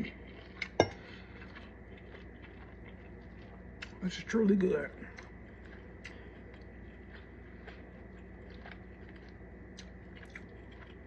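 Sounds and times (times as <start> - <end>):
person chewing food: 0.0 - 11.0.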